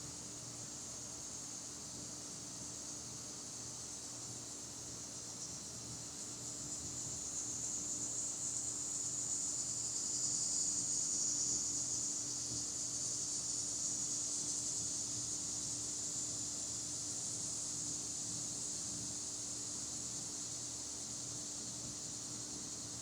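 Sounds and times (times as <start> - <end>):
insect chorus buzzing: 5.1 - 23.0.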